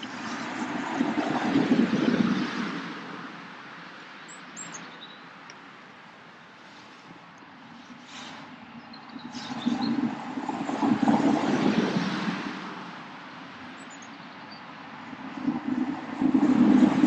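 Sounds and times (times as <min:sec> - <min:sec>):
wind buffeting microphone: 0:00.0 - 0:03.4, 0:09.0 - 0:13.7, 0:15.0 - 0:17.0.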